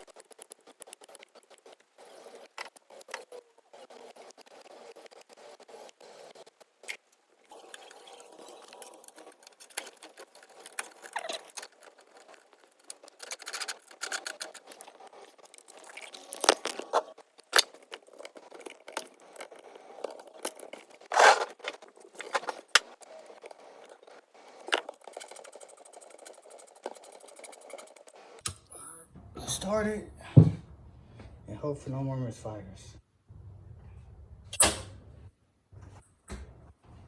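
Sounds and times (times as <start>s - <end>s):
rapid ratchet clicks: 24.7s - 28.2s.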